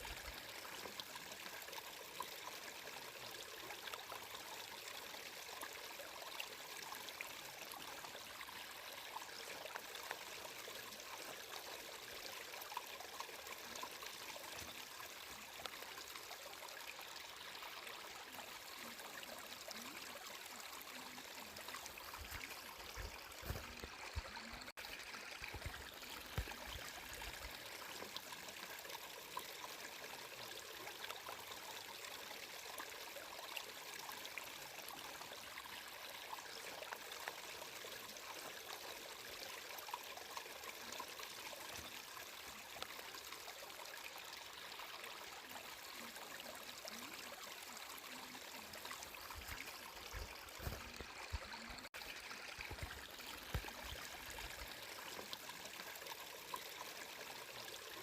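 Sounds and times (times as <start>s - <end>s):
water trickling and splashing: 0.0s - 58.0s.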